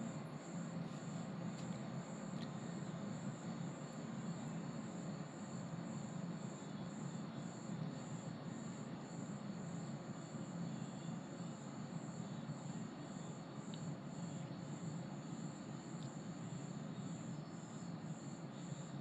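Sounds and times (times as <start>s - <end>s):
kettle rumbling hiss: 0.0s - 19.0s.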